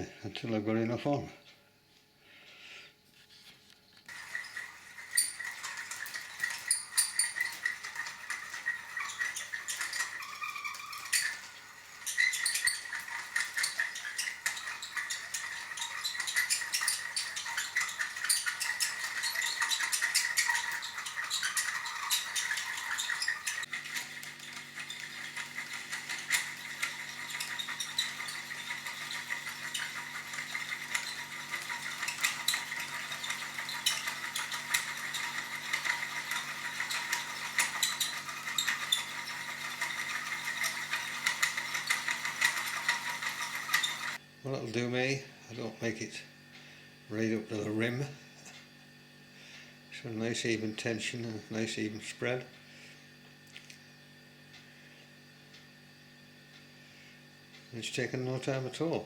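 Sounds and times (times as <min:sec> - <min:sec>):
fishing reel clicking whir: 0:04.1 - 0:44.2.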